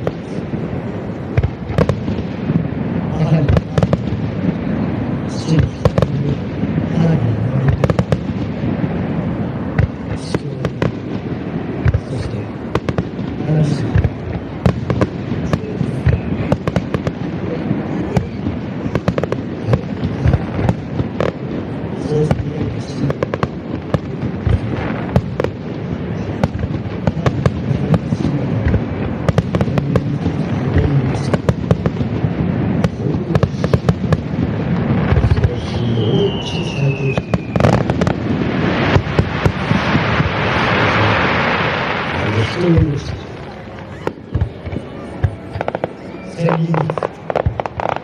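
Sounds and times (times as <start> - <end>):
firework falling whistle: 35.3 - 38.1.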